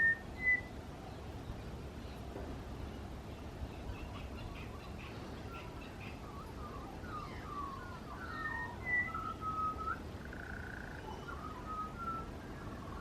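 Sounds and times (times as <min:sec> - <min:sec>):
songbird singing: 0:00.0 - 0:13.0.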